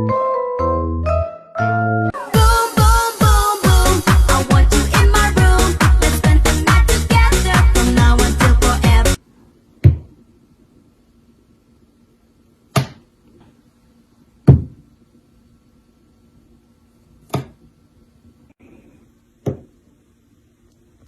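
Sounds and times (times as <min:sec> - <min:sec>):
faint steady hum: 0:09.2 - 0:21.0
sharp knocks: 0:09.8 - 0:10.1, 0:14.5 - 0:14.8.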